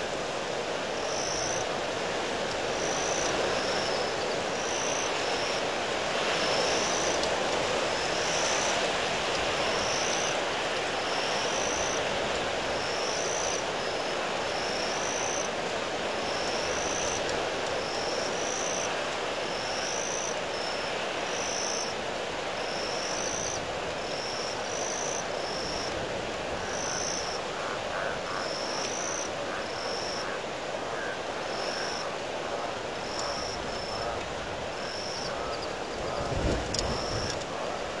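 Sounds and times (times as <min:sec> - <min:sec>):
wind rushing over microphone: 0:33.0 - 0:38.0.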